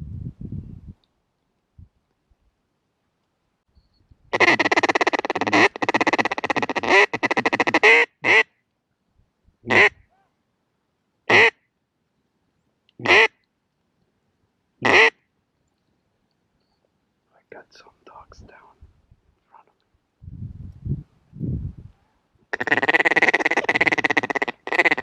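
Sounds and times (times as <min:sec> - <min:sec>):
duck call quacks: 0:04.3 - 0:08.5, 0:09.7 - 0:10.0, 0:11.3 - 0:11.6, 0:13.0 - 0:13.3, 0:14.8 - 0:15.2, 0:22.5 - 0:25.0.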